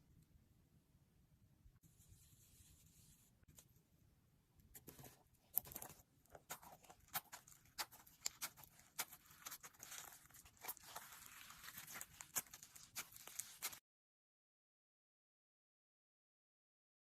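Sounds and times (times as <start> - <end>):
slime squished by hand: 5.5 - 13.8.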